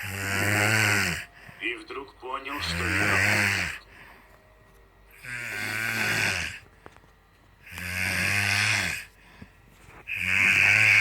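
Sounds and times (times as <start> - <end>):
loud snoring: 0.0 - 1.3, 2.6 - 3.8, 5.2 - 6.6, 7.7 - 9.1, 10.1 - 11.0.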